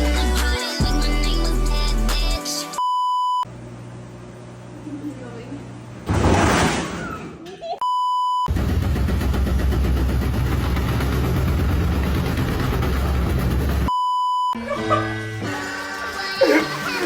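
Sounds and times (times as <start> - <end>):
music: 0.0 - 2.8, 14.6 - 17.0
low mechanical rumble: 8.5 - 13.9.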